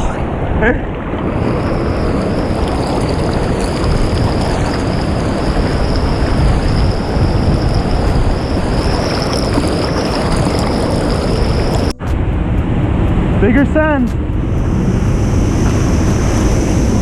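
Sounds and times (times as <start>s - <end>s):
glacial stream water rushing: 0.0s - 11.9s
waterfall: 0.0s - 12.2s.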